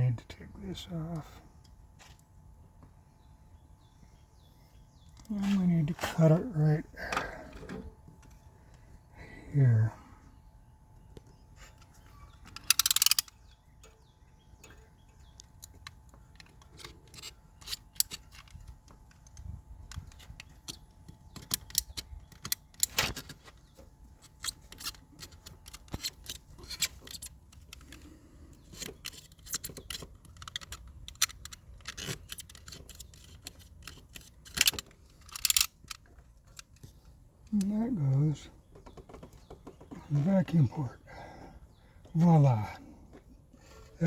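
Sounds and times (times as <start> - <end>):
tools clicking and rattling: 11.7 - 37.7.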